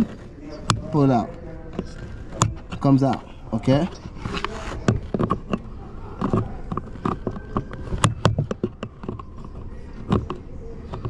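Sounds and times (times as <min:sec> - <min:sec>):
plastic panel being handled: 0:00.0 - 0:11.0.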